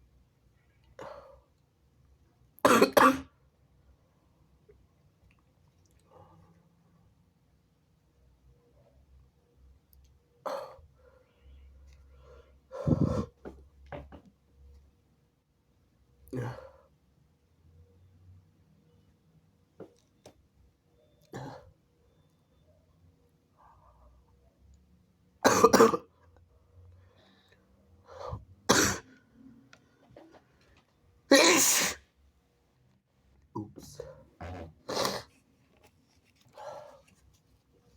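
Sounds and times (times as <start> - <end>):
stifled sneeze: 31.3 - 32.1, 34.1 - 35.4.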